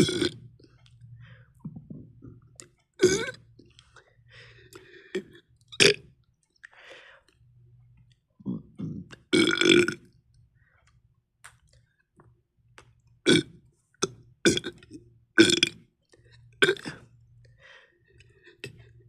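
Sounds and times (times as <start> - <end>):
person burping: 0.0 - 0.4, 3.0 - 3.5, 5.1 - 6.0, 8.4 - 10.0, 13.3 - 13.5, 14.5 - 15.8, 16.6 - 17.1.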